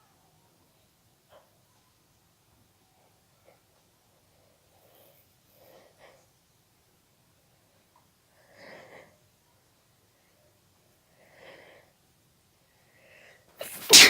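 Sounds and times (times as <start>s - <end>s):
person breathing before sneeze: 13.6s - 14.0s
person sneezing: 13.6s - 14.0s.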